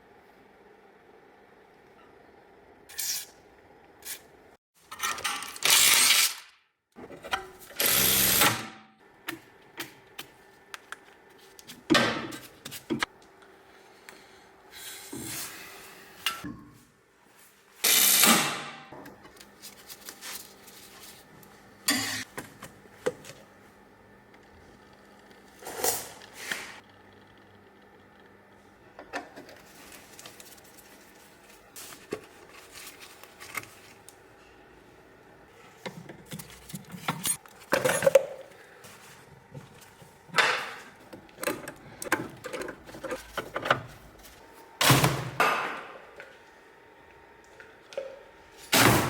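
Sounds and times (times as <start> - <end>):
tool clicks and clanks: 7.3 - 8.8.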